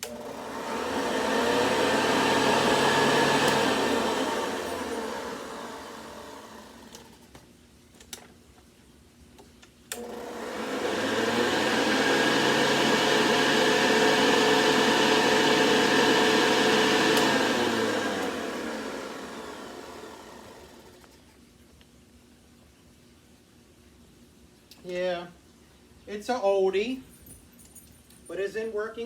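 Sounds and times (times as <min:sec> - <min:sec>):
vacuum cleaner motor whirring: 0:00.0 - 0:07.4, 0:09.9 - 0:21.3
vacuum cleaner switch click: 0:03.0 - 0:05.2, 0:09.9 - 0:10.2, 0:16.6 - 0:19.4.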